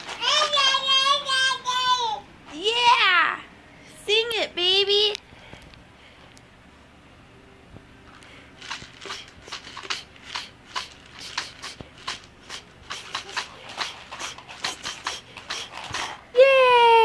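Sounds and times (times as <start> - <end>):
baby shaking a rattle: 8.6 - 16.2.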